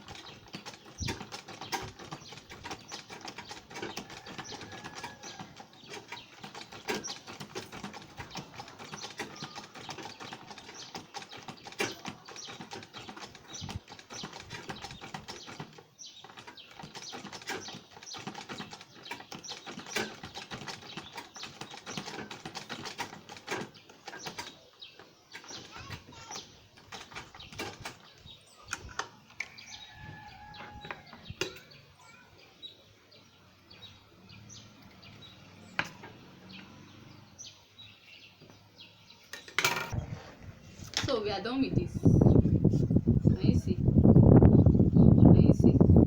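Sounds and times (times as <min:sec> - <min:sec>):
sewing machine stitching: 0:00.0 - 0:24.6, 0:25.3 - 0:28.0.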